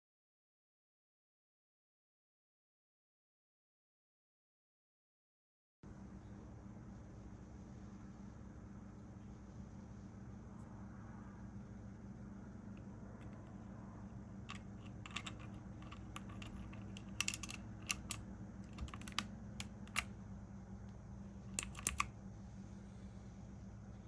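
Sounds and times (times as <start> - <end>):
low steady hum: 5.8 - 24.0
mechanical keyboard keys clicking: 14.5 - 20.1, 21.5 - 22.1.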